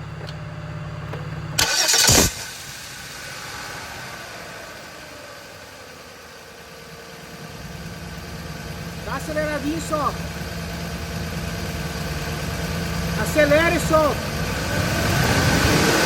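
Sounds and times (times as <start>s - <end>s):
car engine running: 0.0s - 16.0s
harsh starter grinding: 1.6s - 5.2s.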